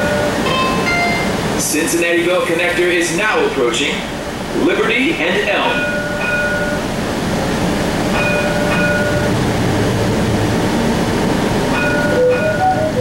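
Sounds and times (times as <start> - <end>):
streetcar rumble: 0.0 - 13.0
short electronic chime: 0.4 - 1.4.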